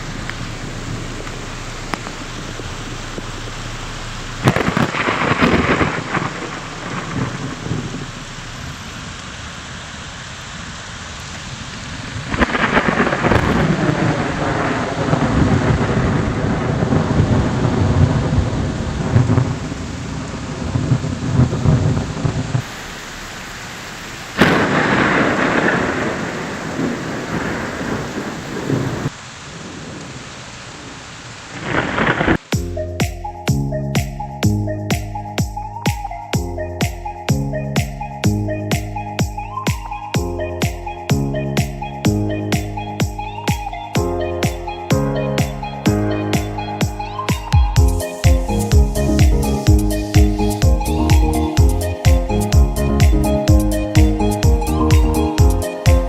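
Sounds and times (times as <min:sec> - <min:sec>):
heavy rain falling: 0:00.0 - 0:32.7, 0:37.4 - 0:56.0
thunder rolls: 0:04.4 - 0:08.8, 0:11.9 - 0:22.7, 0:24.4 - 0:32.4.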